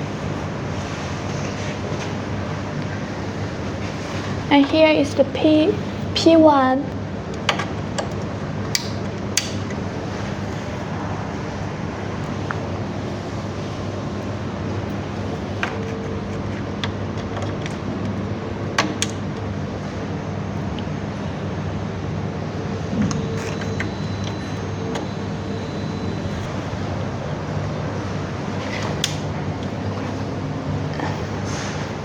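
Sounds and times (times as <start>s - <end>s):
connectors clicking: 6.9s - 9.9s, 15.6s - 19.6s.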